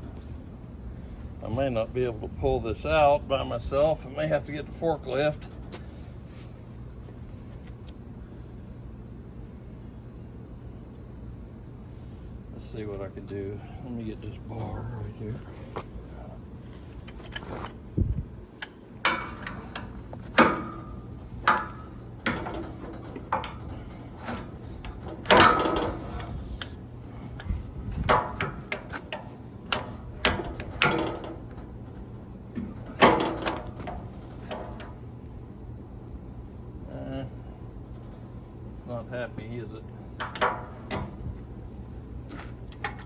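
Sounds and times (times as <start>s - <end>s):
metallic knocks and clanks: 18.6s - 26.8s, 27.4s - 35.0s, 40.2s - 41.2s.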